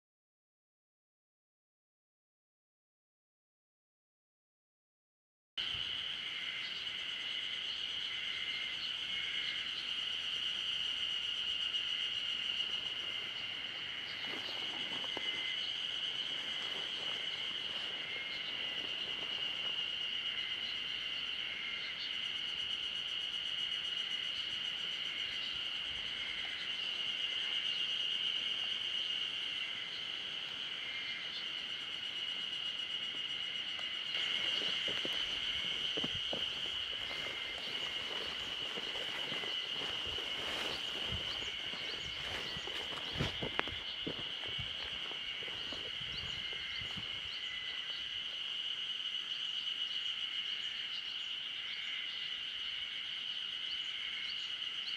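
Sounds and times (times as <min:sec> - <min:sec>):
insects droning: 0:05.6 - 0:54.9.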